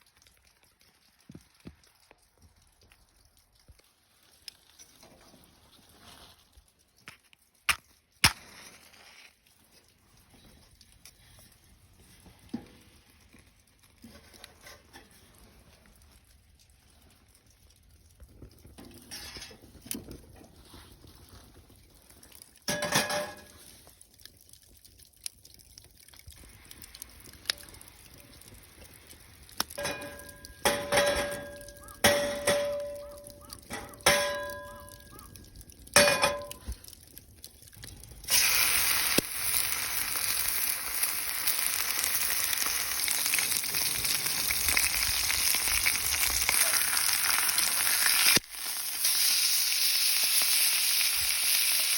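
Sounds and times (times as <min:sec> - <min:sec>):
metal cookware clinking: 0:22.7 - 0:23.6, 0:29.8 - 0:35.2, 0:36.0 - 0:36.7
steak sizzling in frying pan: 0:38.3 - 0:51.9.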